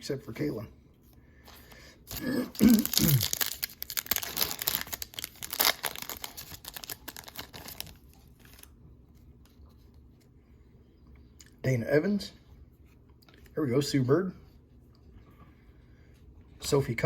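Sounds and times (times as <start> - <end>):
foil pack tearing and crinkling: 2.1 - 8.7.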